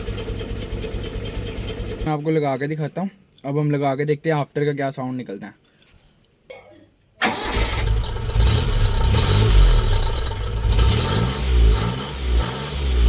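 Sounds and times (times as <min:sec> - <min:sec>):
motorcycle engine revving: 0:00.0 - 0:02.1, 0:07.3 - 0:13.0
high-pitched exhaust whistles: 0:08.7 - 0:13.0.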